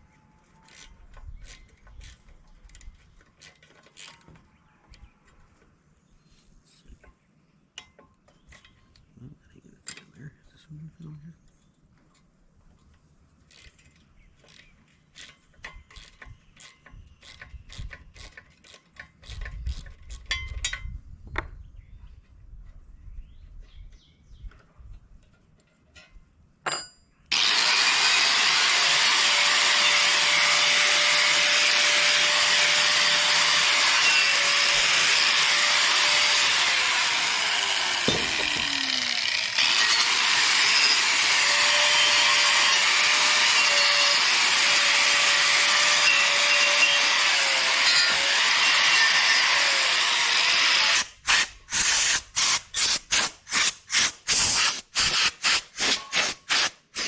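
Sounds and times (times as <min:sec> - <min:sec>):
power tool hissing: 0:27.3 - 0:45.3, 0:51.0 - 0:57.0
knocks: 0:38.0 - 0:38.8.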